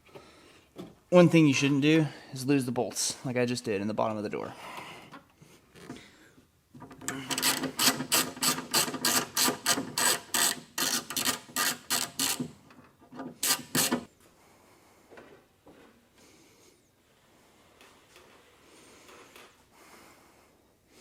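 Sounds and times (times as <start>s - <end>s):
socket ratchet clicking: 13.4s - 14.1s.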